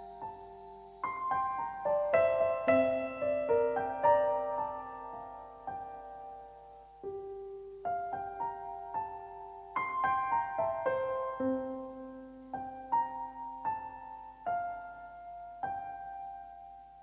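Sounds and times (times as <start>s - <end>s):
gentle solo piano melody: 0.0s - 17.0s.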